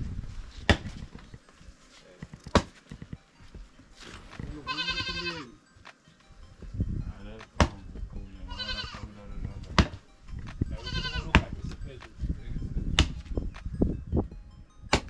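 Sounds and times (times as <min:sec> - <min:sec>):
goat bleating: 0:04.4 - 0:05.6, 0:08.4 - 0:09.2, 0:10.7 - 0:11.4.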